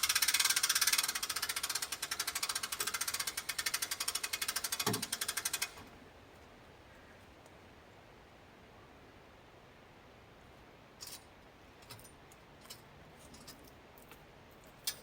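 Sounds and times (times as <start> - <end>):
small engine idling: 0.0 - 5.9.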